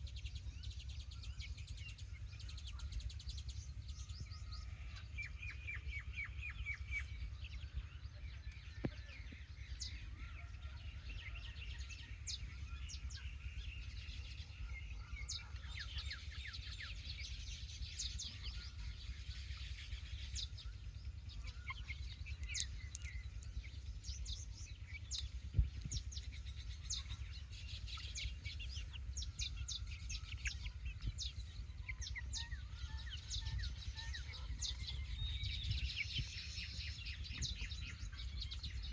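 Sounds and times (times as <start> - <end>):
low rumble: 0.0 - 38.9
chicks peeping: 8.5 - 38.9.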